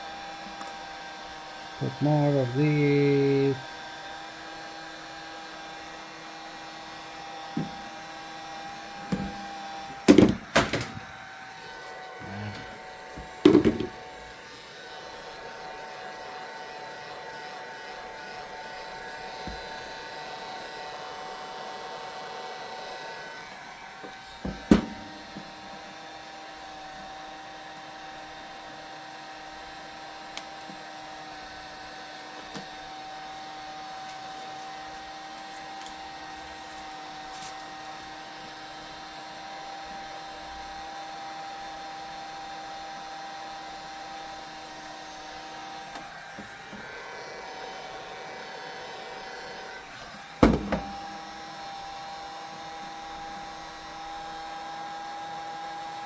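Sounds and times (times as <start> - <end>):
heat gun whine: 0.0 - 56.0.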